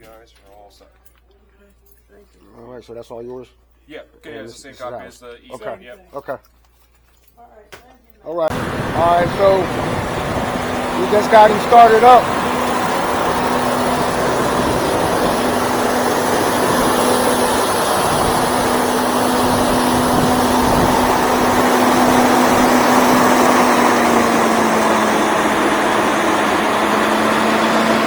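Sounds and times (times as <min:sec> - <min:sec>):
diesel truck engine idling: 0:08.5 - 0:28.0.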